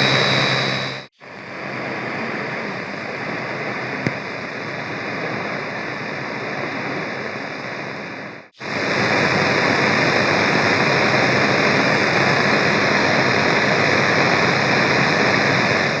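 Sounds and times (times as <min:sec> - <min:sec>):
radio static hiss: 0:00.0 - 0:16.0.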